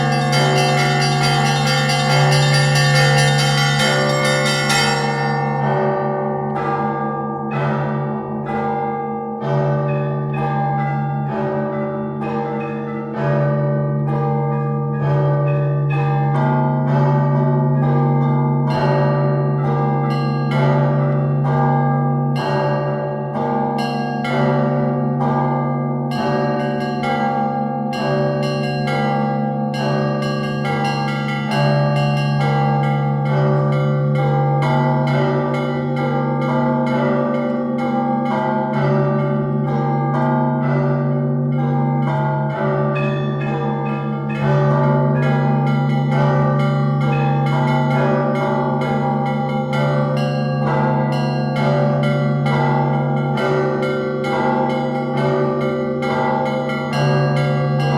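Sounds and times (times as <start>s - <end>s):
small bells struck: 0.0s - 6.2s, 41.9s - 57.9s
deep bell hum: 0.0s - 6.4s, 56.9s - 57.9s
church bells ringing: 0.0s - 57.9s.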